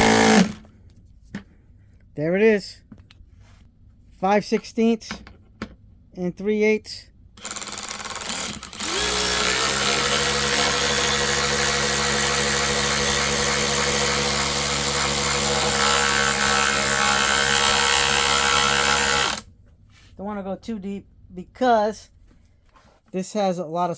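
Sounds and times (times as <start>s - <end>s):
cordless ratchet motor whine: 0.0s - 0.6s, 7.4s - 19.4s.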